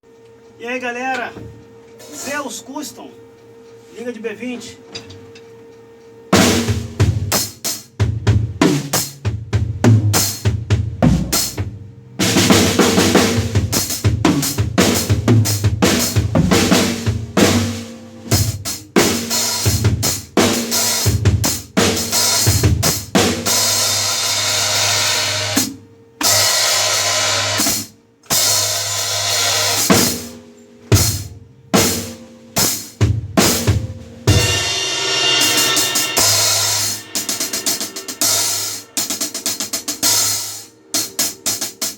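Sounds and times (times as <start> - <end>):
bass drum: 6.4 - 17.6, 18.3 - 23.7
sustained cymbal wash: 12.1 - 41.9
snare drum: 31.0 - 41.9
hi-hat strokes: 34.4 - 41.9.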